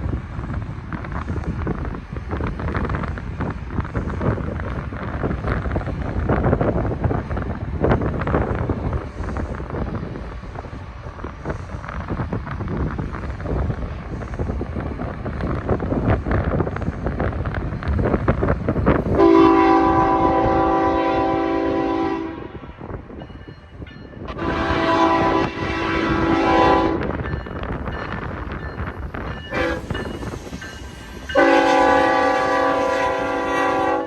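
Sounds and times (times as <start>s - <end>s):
train rumbling and clicking: 0.0s - 34.0s
locomotive air horn blasts: 19.2s - 22.6s, 24.3s - 27.1s, 29.5s - 29.9s, 31.4s - 34.0s.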